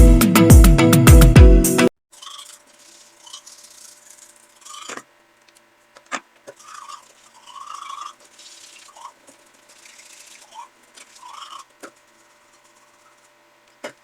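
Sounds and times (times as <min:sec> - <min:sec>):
toothbrush scrubbing teeth: 0:02.2 - 0:05.1, 0:06.6 - 0:13.3.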